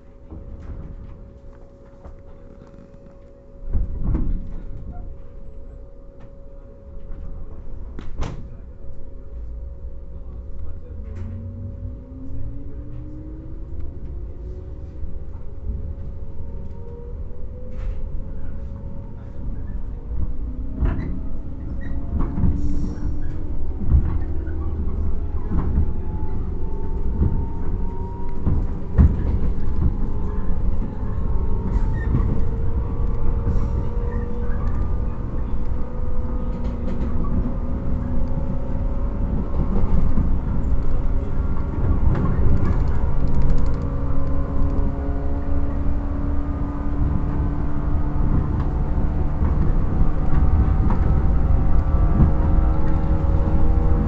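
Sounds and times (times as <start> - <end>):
low train running rumble: 0.0 - 54.0
wheels clacking on rail joints: 18.7 - 54.0.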